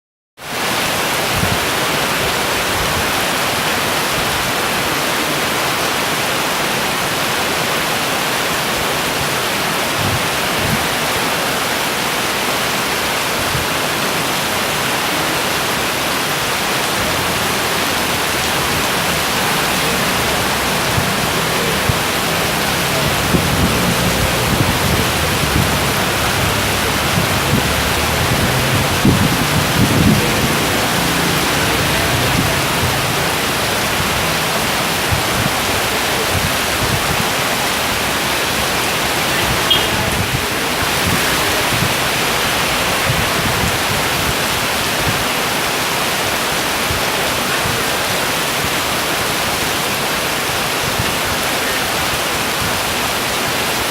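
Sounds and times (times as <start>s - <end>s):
heavy rain pouring: 0.4s - 53.9s
low rumbles: 16.8s - 37.2s.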